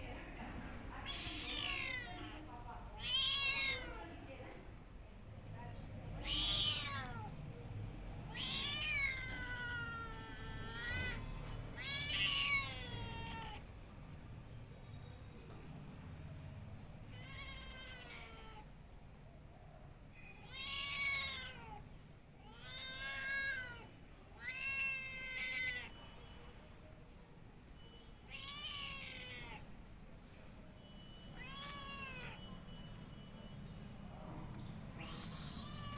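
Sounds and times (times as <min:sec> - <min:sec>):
cat meowing: 0:01.0 - 0:04.0, 0:06.2 - 0:07.4, 0:08.3 - 0:13.7, 0:17.1 - 0:18.7, 0:20.3 - 0:21.8, 0:22.4 - 0:26.0, 0:28.2 - 0:29.7, 0:31.0 - 0:32.8, 0:34.9 - 0:35.9.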